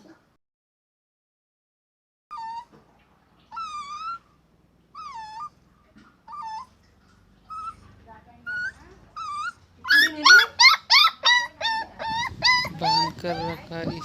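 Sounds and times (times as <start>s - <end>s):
puppy whining and yelping: 2.3s - 2.8s, 3.4s - 14.0s.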